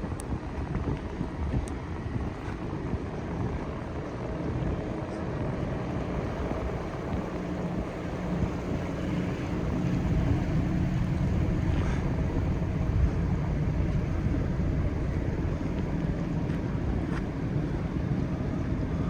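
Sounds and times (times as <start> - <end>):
wind on microphone: 0.0 - 19.0
steady low hum: 2.2 - 19.0
ship engines rumbling: 5.0 - 19.0.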